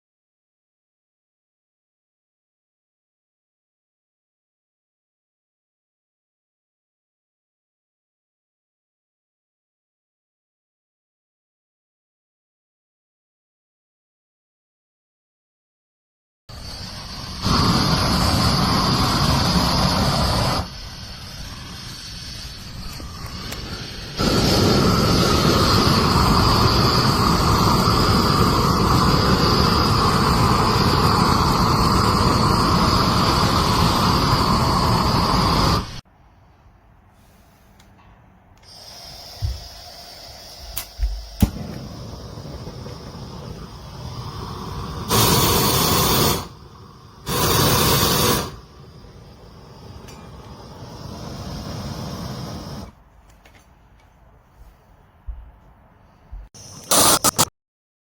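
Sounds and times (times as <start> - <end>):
weed burner torch hissing: 16.5 - 36.0, 38.6 - 53.0, 56.5 - 57.5.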